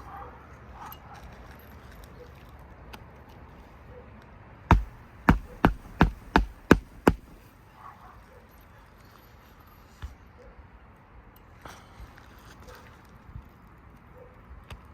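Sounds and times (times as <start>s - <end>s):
hammer driving nail through shingle: 4.7s - 7.4s.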